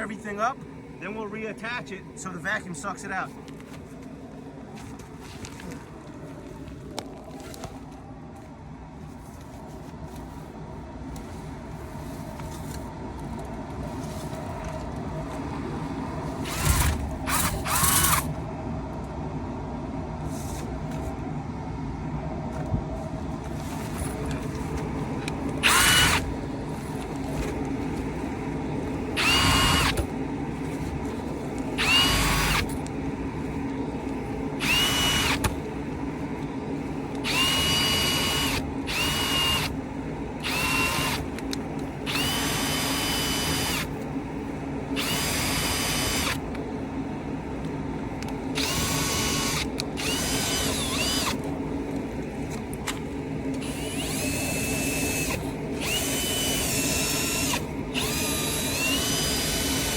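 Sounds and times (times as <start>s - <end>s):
steady motor hum: 0.0s - 59.9s
power drill whining: 16.4s - 18.3s, 25.6s - 27.6s, 29.1s - 30.1s, 31.1s - 32.8s, 34.6s - 35.5s, 37.1s - 39.8s, 40.4s - 41.3s, 42.1s - 43.9s, 45.0s - 46.4s, 48.6s - 51.5s, 53.6s - 59.9s.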